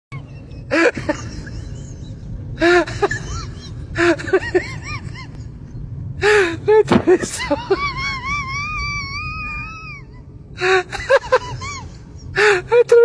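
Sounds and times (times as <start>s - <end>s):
steady low rumble: 0.1s - 13.0s.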